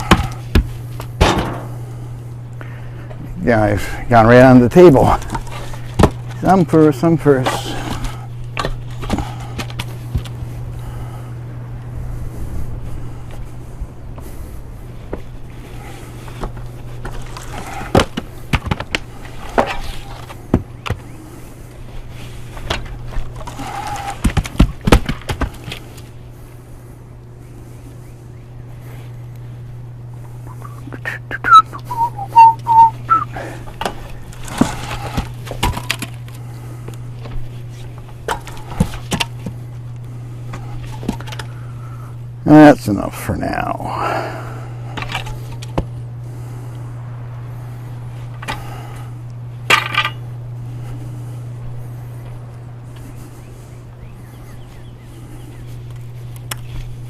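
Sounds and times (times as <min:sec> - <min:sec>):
firewood clunking together: 0:00.0 - 0:01.8, 0:33.6 - 0:36.4
steady low hum: 0:00.0 - 0:57.0.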